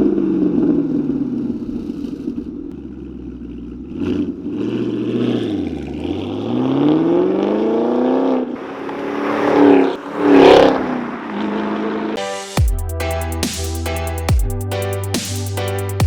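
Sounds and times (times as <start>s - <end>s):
car engine revving: 0.2s - 12.2s
music: 12.2s - 16.0s.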